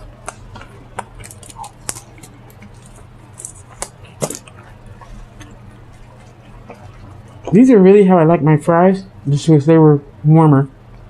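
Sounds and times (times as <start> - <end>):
person chewing food: 0.0 - 7.6.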